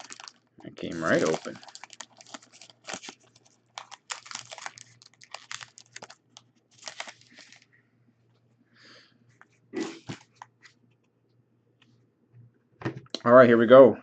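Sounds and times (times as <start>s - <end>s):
wrapper crinkling: 0.0s - 7.7s
faint steady hum: 0.0s - 14.0s.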